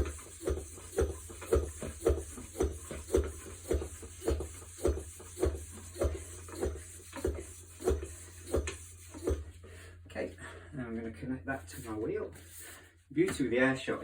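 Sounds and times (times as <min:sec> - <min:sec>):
bicycle pump strokes: 0:00.0 - 0:09.9.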